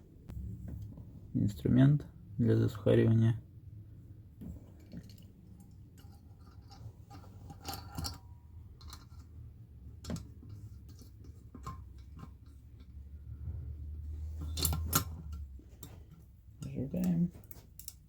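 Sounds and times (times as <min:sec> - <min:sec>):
low steady hum: 0:00.0 - 0:18.0
metallic clicks of valve parts: 0:04.8 - 0:09.4, 0:14.4 - 0:18.0.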